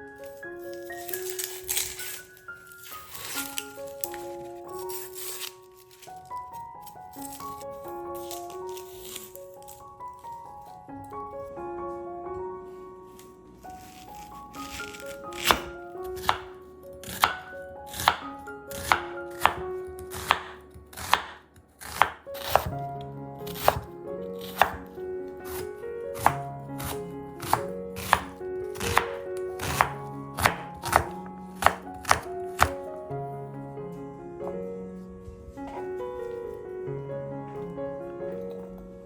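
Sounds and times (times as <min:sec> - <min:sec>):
soft piano music: 0:00.0 - 0:39.0
knife chopping on cutting board: 0:14.6 - 0:22.8, 0:23.5 - 0:32.9.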